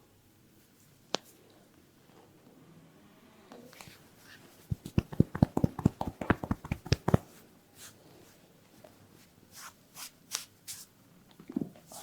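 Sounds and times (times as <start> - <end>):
swishing rubs: 3.8 - 8.4
soft massage tapping: 4.6 - 7.4.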